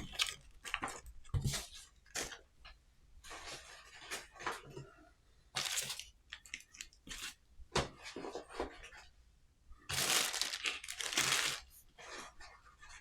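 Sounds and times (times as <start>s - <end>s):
plastic packaging crinkling: 5.6s - 6.1s, 9.9s - 11.8s.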